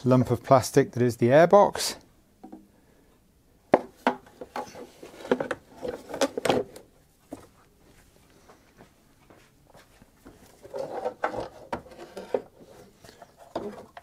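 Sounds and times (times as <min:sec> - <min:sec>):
plastic clunks and scrapes: 0:03.8 - 0:06.8, 0:10.6 - 0:14.0
hard plastic knocking and rubbing: 0:10.6 - 0:14.0.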